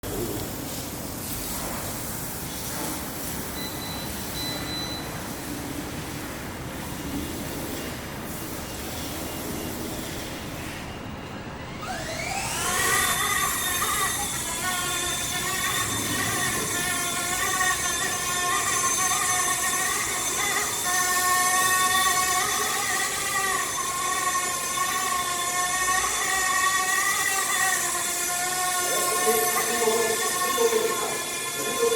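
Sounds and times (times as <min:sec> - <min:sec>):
rc helicopter motor whine: 0:11.6 - 0:31.9.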